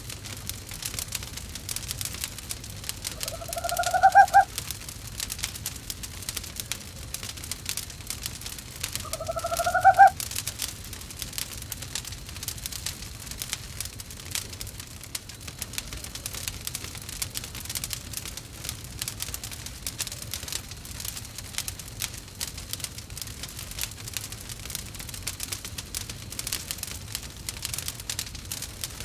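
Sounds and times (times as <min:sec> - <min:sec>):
crackling wood fire: 0:00.0 - 0:29.0
owl calling: 0:03.1 - 0:04.5, 0:09.0 - 0:10.2.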